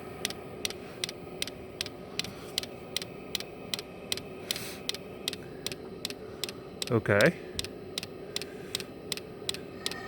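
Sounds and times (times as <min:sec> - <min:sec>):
heater fan humming: 0:00.0 - 0:10.0.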